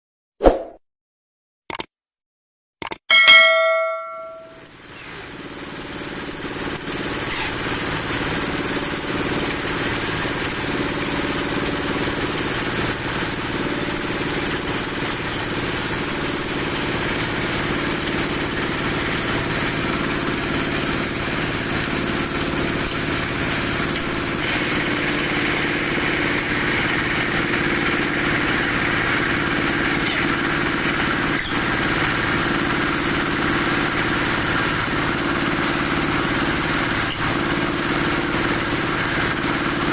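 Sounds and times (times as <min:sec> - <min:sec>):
sharp click: 0:01.7 - 0:01.9, 0:02.8 - 0:04.5.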